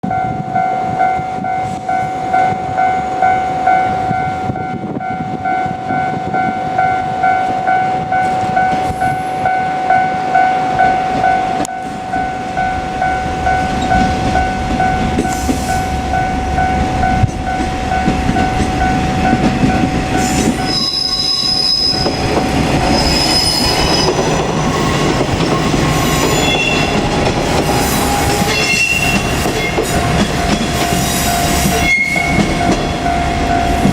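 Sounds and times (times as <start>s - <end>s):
diesel railcar engine and wheels: 0.0s - 33.9s
wheel squeals: 20.2s - 27.1s, 27.7s - 33.0s.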